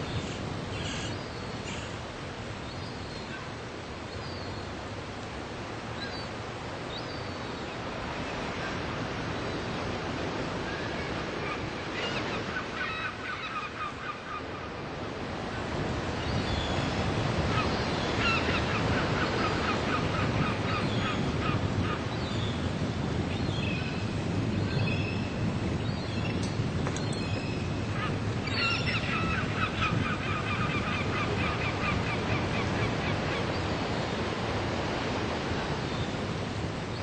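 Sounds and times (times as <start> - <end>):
seagulls calling: 10.8 - 14.7, 17.4 - 22.6, 27.2 - 33.7.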